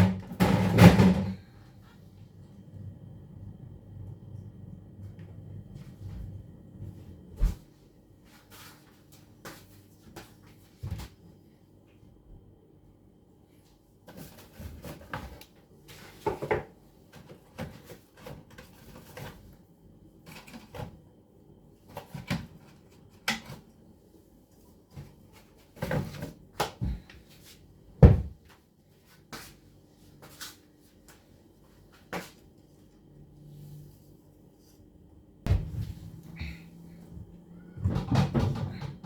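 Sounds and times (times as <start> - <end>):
loud thud: 35.5 - 36.6.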